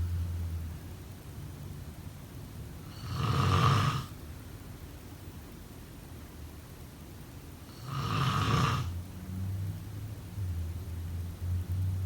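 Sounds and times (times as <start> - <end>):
person snoring: 2.9 - 4.1, 7.8 - 8.9.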